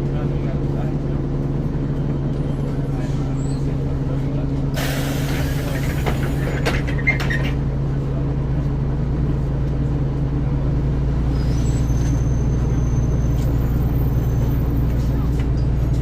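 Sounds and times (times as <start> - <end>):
diesel bus engine idling: 0.0 - 16.0.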